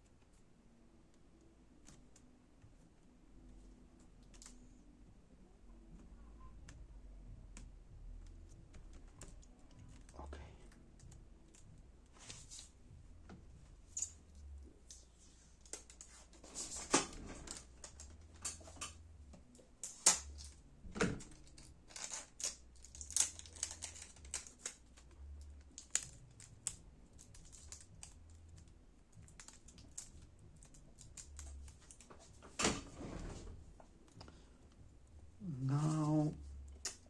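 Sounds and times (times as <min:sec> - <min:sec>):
keyboard parts clicking and tapping: 0:05.9 - 0:11.9, 0:16.9 - 0:32.6.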